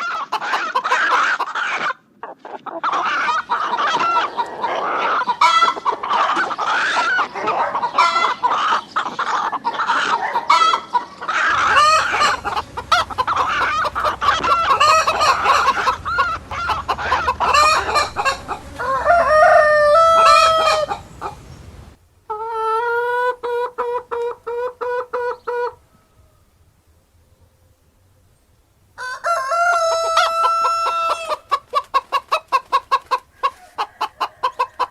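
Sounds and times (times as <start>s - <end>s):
chickens clucking and cackling: 0.0s - 34.9s
rooster crowing: 11.4s - 21.4s, 29.0s - 31.4s.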